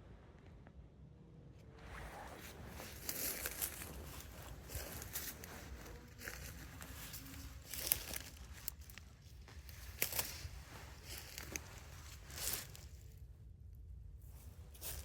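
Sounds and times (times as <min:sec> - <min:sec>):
clothing brushing twigs: 0:01.8 - 0:13.0, 0:14.4 - 0:15.0
footsteps in dry leaves: 0:02.4 - 0:13.0, 0:14.7 - 0:15.0
twigs snapping: 0:03.0 - 0:12.9.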